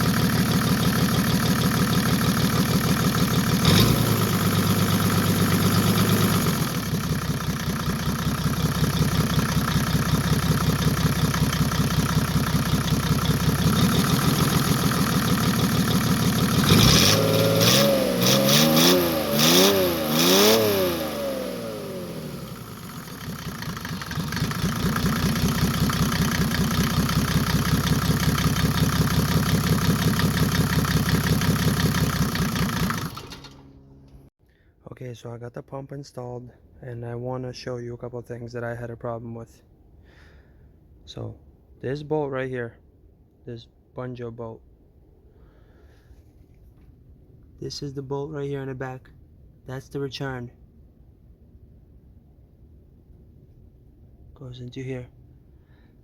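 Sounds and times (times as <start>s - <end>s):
diesel engine idling and revving: 0.0s - 34.3s.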